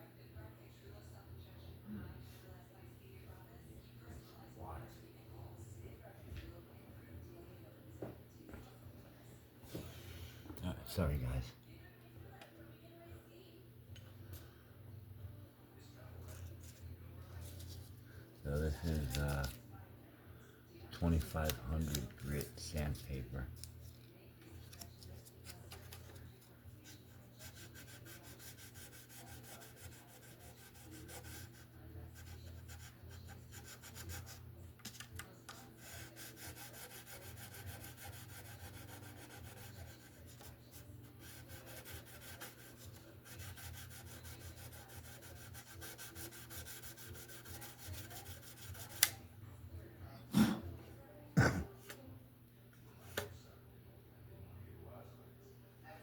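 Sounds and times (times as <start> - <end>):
sandpaper rubbing on frets: 27.4 - 34.4, 35.8 - 40.5, 41.2 - 49.1.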